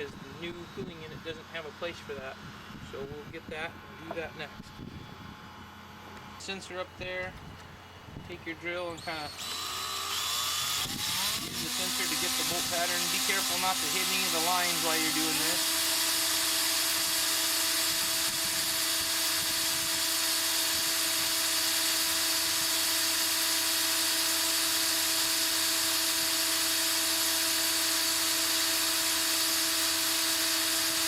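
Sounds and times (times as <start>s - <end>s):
electric drill running: 8.9s - 31.0s.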